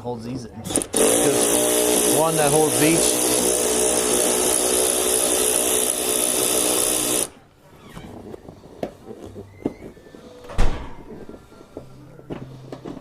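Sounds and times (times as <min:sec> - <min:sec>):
cordless impact wrench running: 0:00.7 - 0:07.3.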